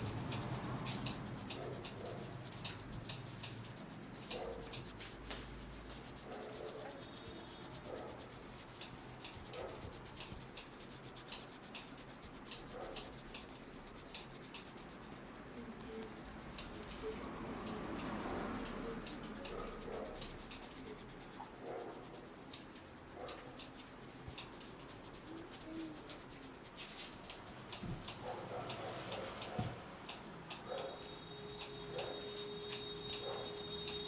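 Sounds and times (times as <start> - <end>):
small crackling clicks: 0.0 - 21.5
hands rubbing scalp through hair: 0.0 - 34.0.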